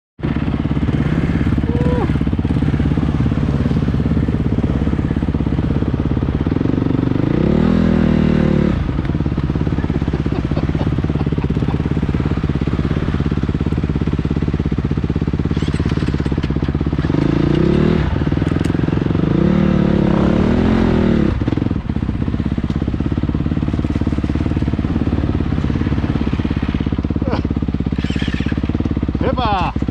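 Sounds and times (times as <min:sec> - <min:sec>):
motorcycle engine revving: 0:00.2 - 0:29.9.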